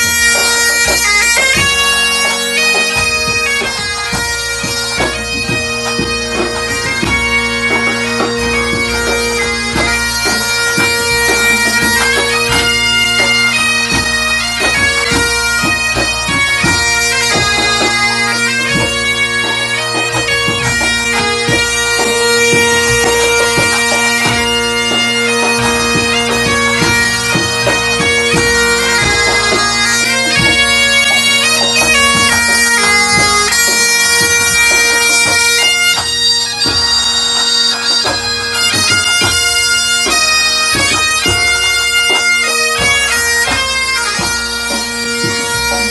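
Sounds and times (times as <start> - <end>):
bagpipes with drone: 0.0 - 45.9
drum strokes: 0.0 - 45.9.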